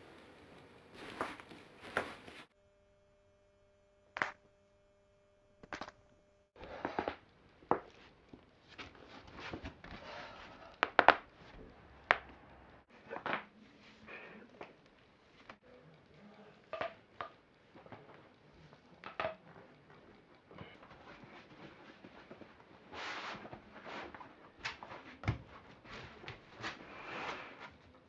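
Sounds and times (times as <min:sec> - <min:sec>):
soft rustling: 0:00.0 - 0:02.6.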